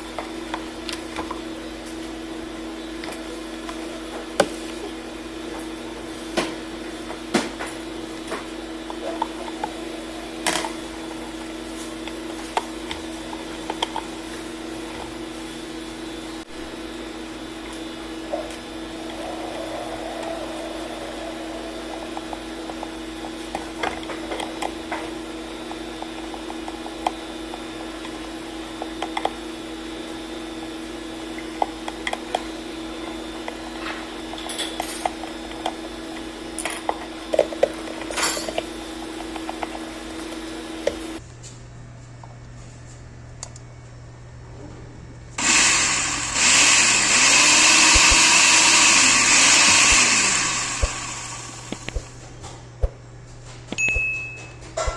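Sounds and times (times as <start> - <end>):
electrical hum: 0.0 - 54.9.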